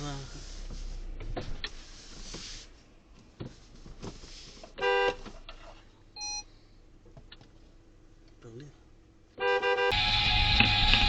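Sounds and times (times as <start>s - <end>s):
road and car noise: 0.0s - 11.0s
car horn honk: 4.8s - 5.2s, 9.4s - 10.1s.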